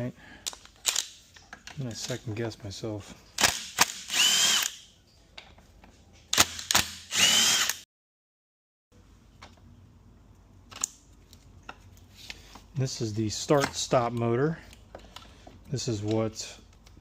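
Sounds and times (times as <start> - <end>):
cordless power driver whirring: 4.1 - 4.8, 7.1 - 7.8.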